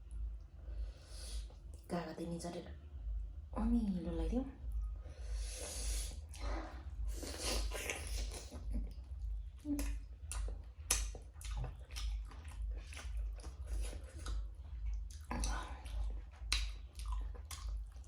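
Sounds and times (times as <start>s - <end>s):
person chewing: 5.4s - 18.0s
mouth clicks and smacks: 7.1s - 18.0s.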